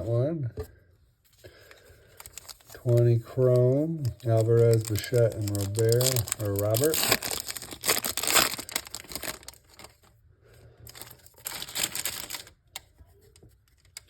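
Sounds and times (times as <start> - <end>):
wrapper crinkling and tearing: 2.1 - 10.1, 10.9 - 12.6.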